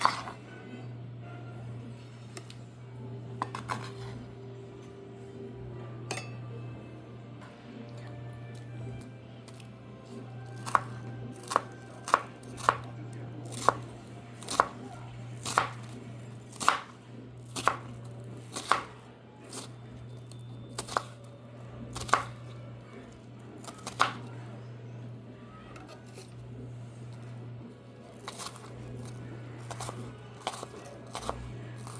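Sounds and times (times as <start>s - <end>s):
knife chopping on cutting board: 0.0s - 0.4s, 3.4s - 4.2s, 10.5s - 19.7s, 20.8s - 21.2s, 22.0s - 22.5s, 23.6s - 24.3s, 28.2s - 31.9s.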